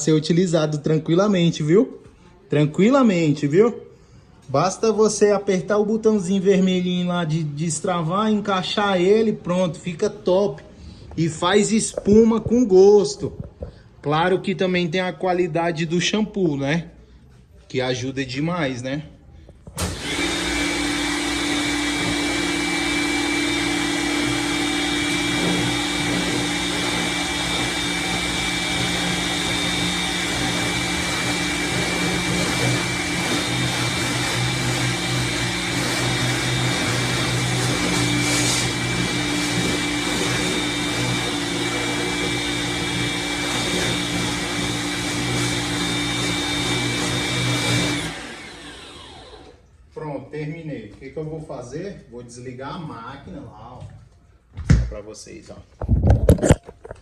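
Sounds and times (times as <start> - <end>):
pressure washer whining: 19.8 - 49.6.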